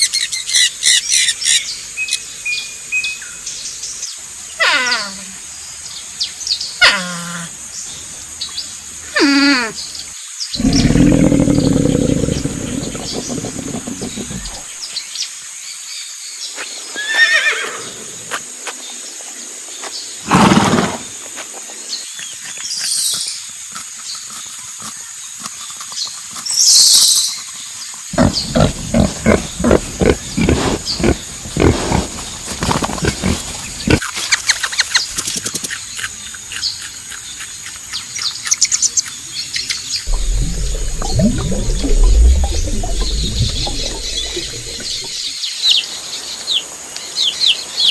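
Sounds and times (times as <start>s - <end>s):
long low rasping animal call: 10.6s - 14.7s, 28.2s - 34.0s, 40.1s - 45.2s
farm animals calling: 28.2s - 34.0s, 40.1s - 45.2s.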